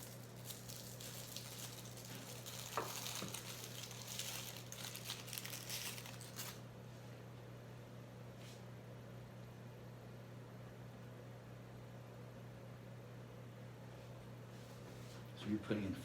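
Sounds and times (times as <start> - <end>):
packaging crinkling: 0.0 - 6.6.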